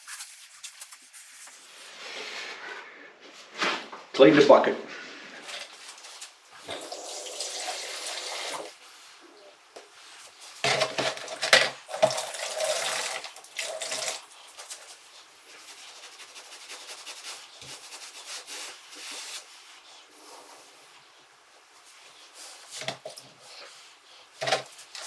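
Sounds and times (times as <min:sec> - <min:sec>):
tap water running and splashing: 0:06.6 - 0:08.8, 0:10.6 - 0:14.9, 0:22.8 - 0:23.3, 0:24.4 - 0:25.0.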